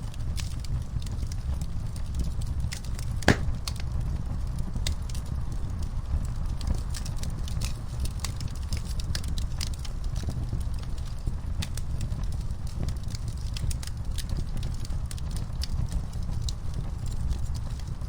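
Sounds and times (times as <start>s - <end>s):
wood fire crackling: 3.3s - 3.7s.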